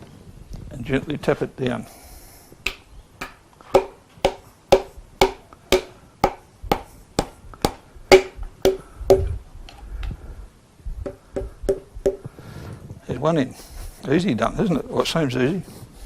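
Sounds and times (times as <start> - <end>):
hammer tapping piston into cylinder: 2.6 - 9.3, 11.1 - 12.3
sharp woody knocks: 2.7 - 9.3, 11.0 - 12.3.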